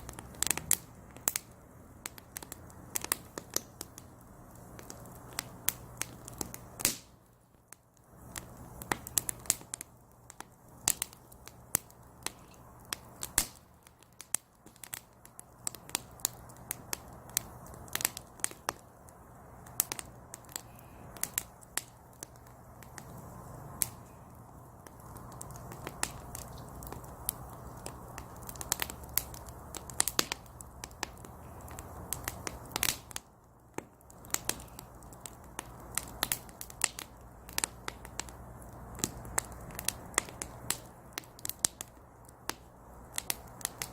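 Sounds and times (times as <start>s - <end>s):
firewood crackling and popping: 0.0s - 43.9s.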